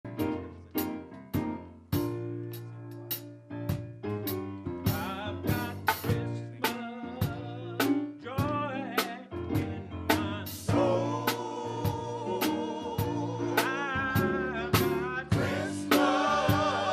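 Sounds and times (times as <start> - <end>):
gospel band music: 0.1 - 16.9
drum hits: 9.6 - 16.9.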